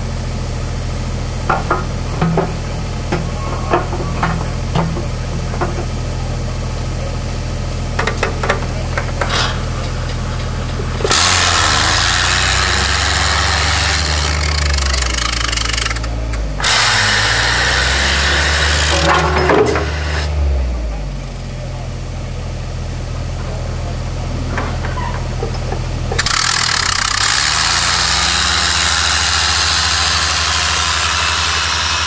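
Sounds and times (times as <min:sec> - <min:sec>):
compressed-air machine drone: 0:08.1 - 0:21.2, 0:26.1 - 0:32.0.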